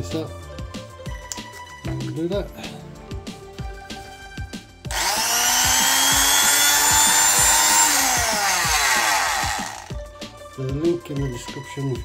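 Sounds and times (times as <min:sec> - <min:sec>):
oscillating multi-tool whining: 0:04.9 - 0:09.9.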